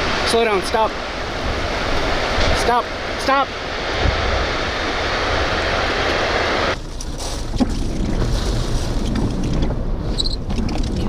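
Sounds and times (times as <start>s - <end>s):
low steady rumble: 0.0s - 11.0s
strong wind rushing: 0.0s - 11.0s.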